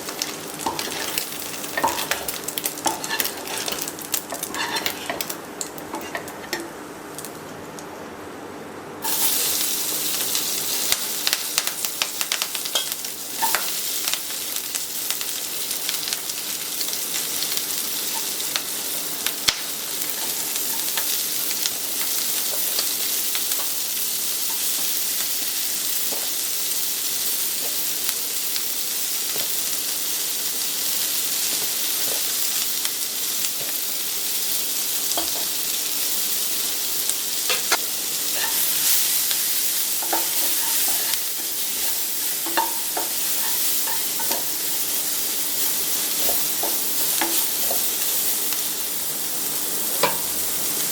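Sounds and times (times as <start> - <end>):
food sizzling in oil: 0.0 - 7.3, 9.0 - 50.9
metal utensil scraping pan: 1.8 - 5.3.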